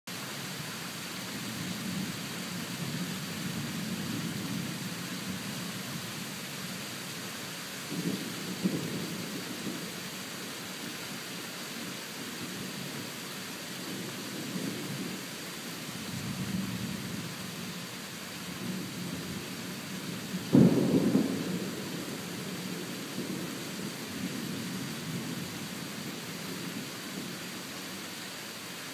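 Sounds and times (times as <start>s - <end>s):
steady rain: 0.1s - 28.9s
loud thunderclap: 7.9s - 9.8s, 20.5s - 21.8s
distant thunder rolling: 7.9s - 10.0s, 20.1s - 25.6s.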